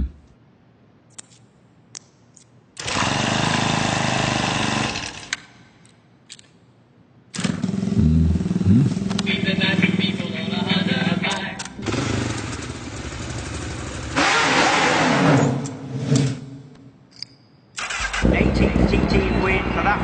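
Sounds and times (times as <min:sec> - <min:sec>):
engine running: 0:07.4 - 0:11.2, 0:17.9 - 0:20.0.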